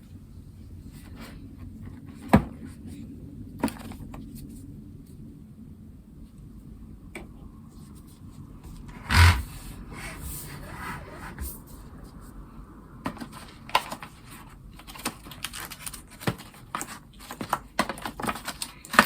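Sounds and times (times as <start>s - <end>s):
low steady hum: 0.0s - 19.0s
scraping rustle: 7.7s - 12.3s.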